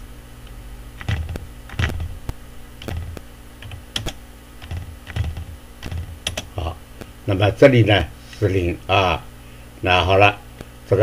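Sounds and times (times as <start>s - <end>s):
steady low hum: 0.0s - 11.0s
keyboard keys tapping: 1.0s - 2.2s, 2.8s - 6.6s.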